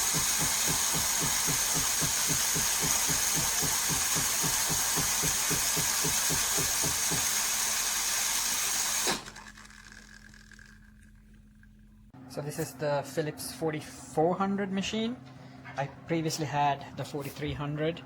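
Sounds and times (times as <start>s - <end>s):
espresso machine hiss: 0.0s - 10.8s
espresso machine pump throbbing: 0.0s - 12.2s.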